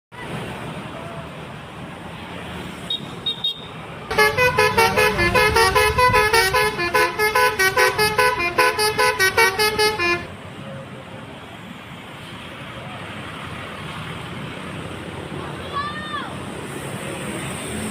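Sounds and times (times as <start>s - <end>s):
bus engine rumble: 0.2s - 17.9s
multi-tone bus horn tune: 3.4s - 10.3s.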